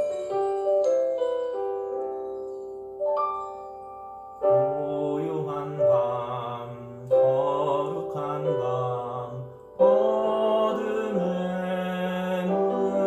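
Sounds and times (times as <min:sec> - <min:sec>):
hymn medley music: 0:04.4 - 0:13.0.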